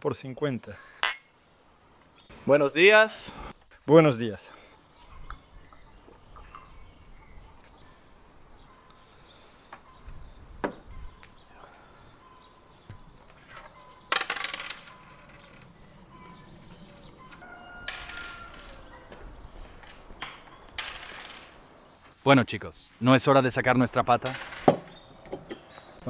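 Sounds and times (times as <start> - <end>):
crickets chirring: 0.2 - 22.1
sharp clinks: 1.0 - 1.3.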